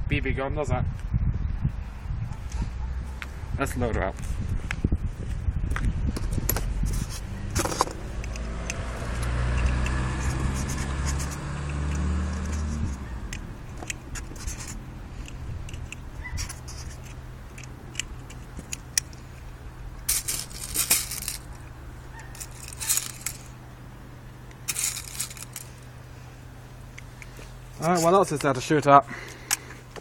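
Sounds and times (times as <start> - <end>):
scraping and rustling: 6.4 - 19.4, 20.0 - 23.6, 24.6 - 25.9
metallic clicks and rattles: 7.5 - 19.3, 20.0 - 23.6, 24.5 - 25.8.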